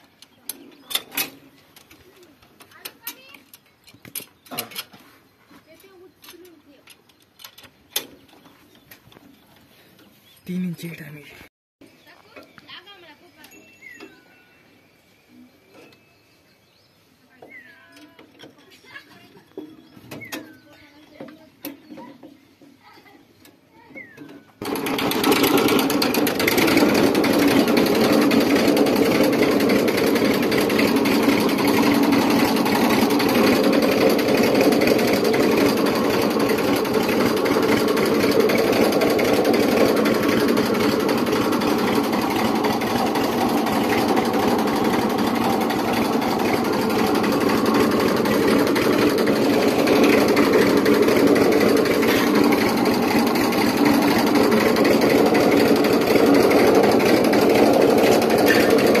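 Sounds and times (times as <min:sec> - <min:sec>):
tractor diesel engine running: 0:24.0 - 0:59.0.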